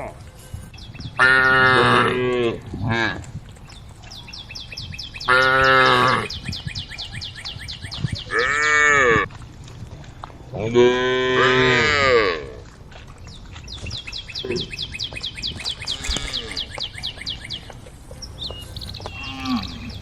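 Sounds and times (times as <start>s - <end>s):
cows mooing: 1.2s - 3.2s, 5.2s - 6.4s, 8.3s - 9.3s, 10.7s - 12.6s, 15.8s - 16.7s, 19.0s - 20.0s.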